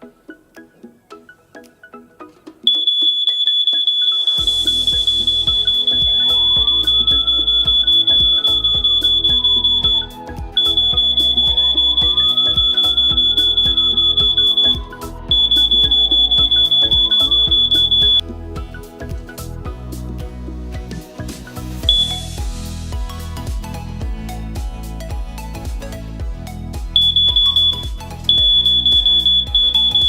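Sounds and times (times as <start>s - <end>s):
background music: 0.0s - 30.0s
burglar alarm siren: 2.7s - 18.2s, 21.9s - 22.3s, 27.0s - 30.0s.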